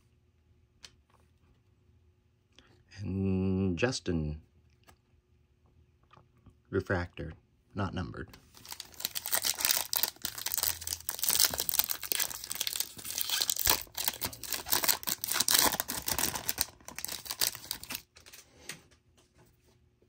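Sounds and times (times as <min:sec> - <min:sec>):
wrapper tearing and crinkling: 0:08.5 - 0:18.4.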